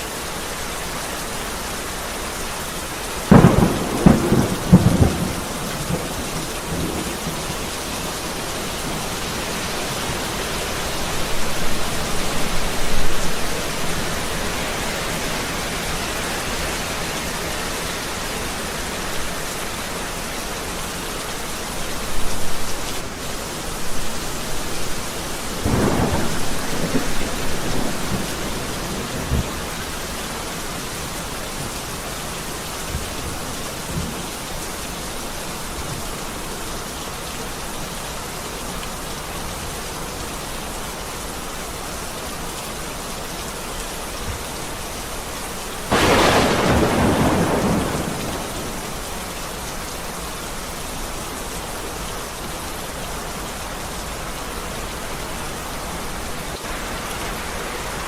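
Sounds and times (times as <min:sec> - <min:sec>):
heavy rain falling: 0:00.0 - 0:58.0
rolling thunder: 0:03.3 - 0:10.6, 0:25.5 - 0:29.7, 0:45.9 - 0:49.0.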